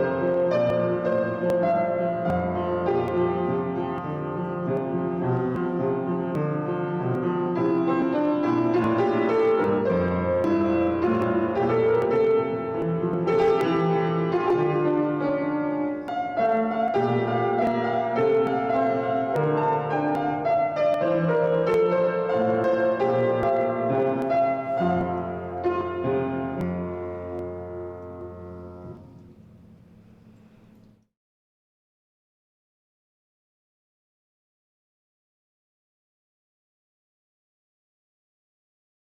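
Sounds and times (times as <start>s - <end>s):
piano playing chords and melody: 0.0s - 31.0s.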